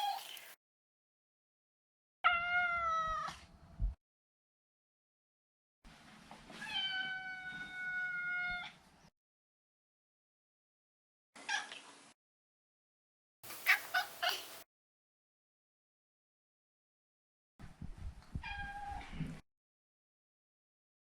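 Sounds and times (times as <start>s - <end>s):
cat meowing: 2.2s - 3.4s, 6.6s - 8.8s, 18.4s - 19.1s.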